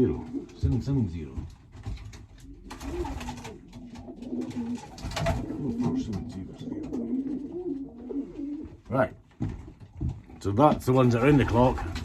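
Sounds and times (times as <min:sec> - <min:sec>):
pigeons cooing: 0:02.4 - 0:08.9.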